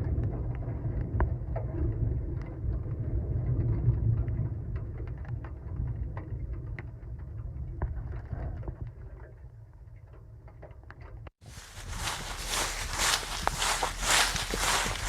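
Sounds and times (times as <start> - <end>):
footsteps: 11.4 - 15.0
low rumble: 11.5 - 15.0.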